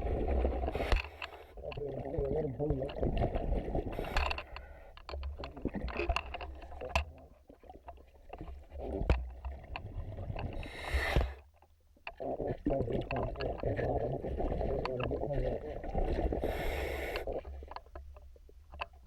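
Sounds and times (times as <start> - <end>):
underwater clicks and knocks: 0.0 - 16.3, 17.2 - 19.0
hiss of exhaled bubbles: 12.2 - 17.6.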